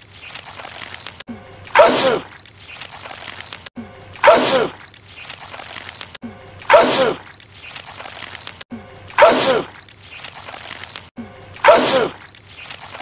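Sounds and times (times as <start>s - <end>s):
man sneezing loudly: 9.2s - 9.7s, 11.6s - 12.2s.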